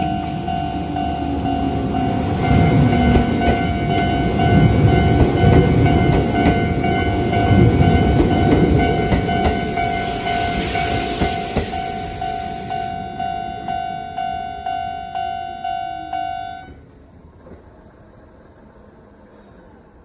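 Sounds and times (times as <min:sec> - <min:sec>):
train wheels rumbling on rails: 0:00.0 - 0:14.9
level crossing bell ringing: 0:11.8 - 0:16.7.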